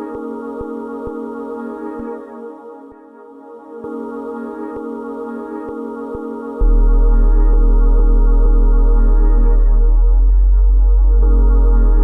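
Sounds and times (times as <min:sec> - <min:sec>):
ambient trap instrumental: 0:00.0 - 0:12.0
sustained chords: 0:03.7 - 0:12.0.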